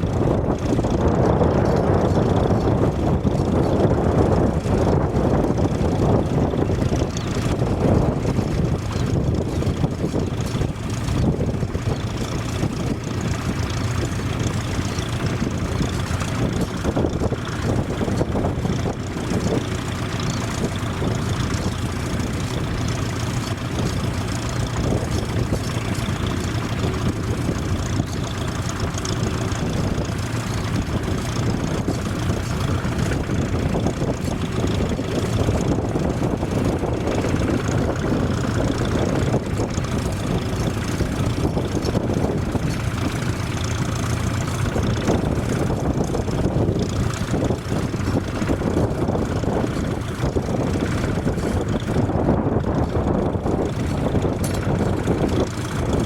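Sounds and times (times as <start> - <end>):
tractor engine running under load: 0.0 - 56.0.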